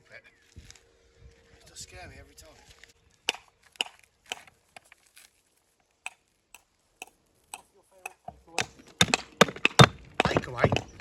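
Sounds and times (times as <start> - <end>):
tool tapping on stone: 7.6 - 11.0.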